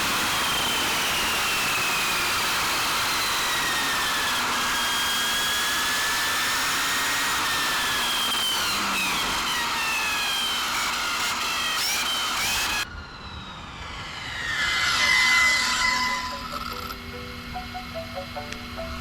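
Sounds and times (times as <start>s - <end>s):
wind and road noise: 12.3s - 17.4s
electric motor whining: 13.7s - 19.0s.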